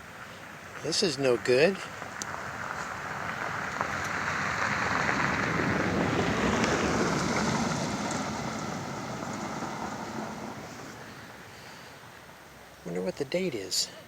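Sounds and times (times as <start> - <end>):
vehicle passing by: 0.4 - 11.5.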